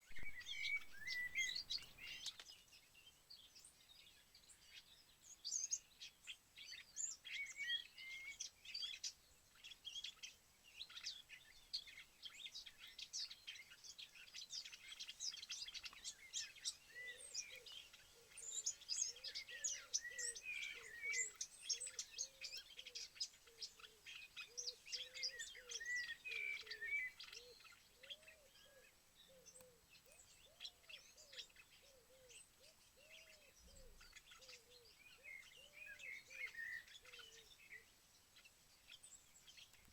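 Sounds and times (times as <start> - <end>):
low bird call: 0.0 - 2.4
songbirds chirping: 0.0 - 39.9.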